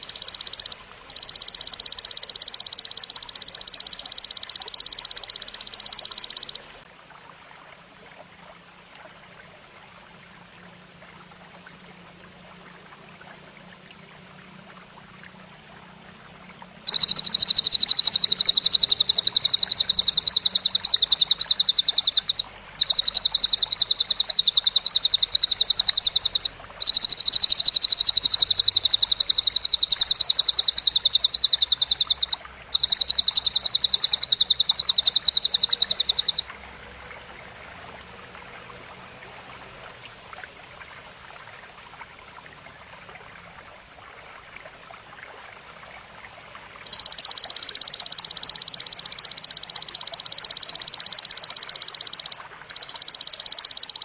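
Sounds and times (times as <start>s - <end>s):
insect buzzing trills: 0.0s - 6.6s, 16.9s - 36.4s.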